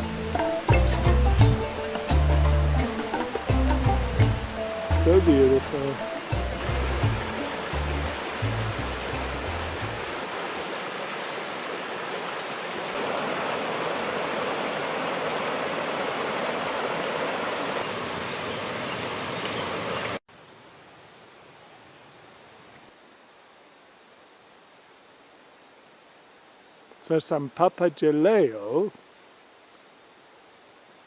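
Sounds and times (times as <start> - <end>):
flowing stream water: 0.0 - 20.6
quiet hiss: 20.3 - 31.0.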